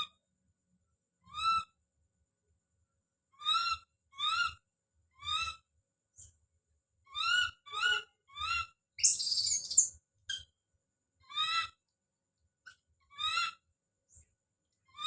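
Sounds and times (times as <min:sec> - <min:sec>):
baby monkey crying: 0:03.4 - 0:04.6, 0:07.1 - 0:09.9, 0:11.2 - 0:11.8, 0:13.1 - 0:13.6.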